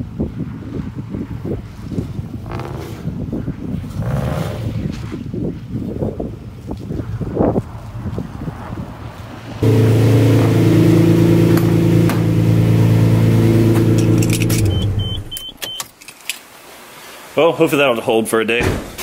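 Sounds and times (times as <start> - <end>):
motor humming: 9.6 - 15.4
short high beeps: 14.6 - 15.9.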